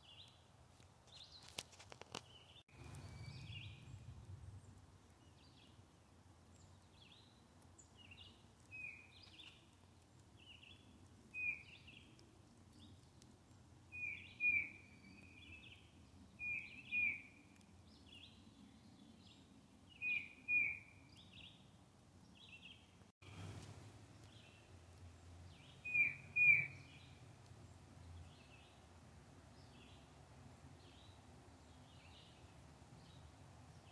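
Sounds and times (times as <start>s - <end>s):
bird calling: 13.9s - 15.4s, 20.0s - 20.9s, 25.5s - 27.2s.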